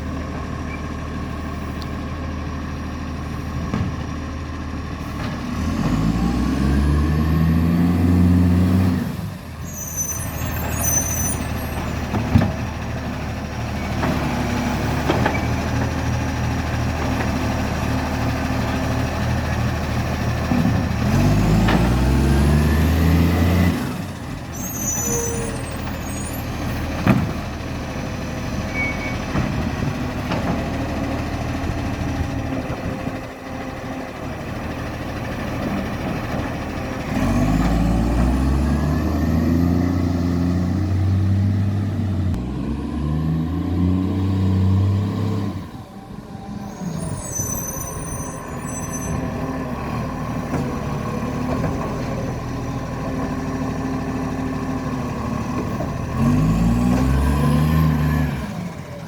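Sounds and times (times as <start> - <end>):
diesel truck engine revving: 0.0 - 59.0
sharp engine knocks: 26.9 - 27.6.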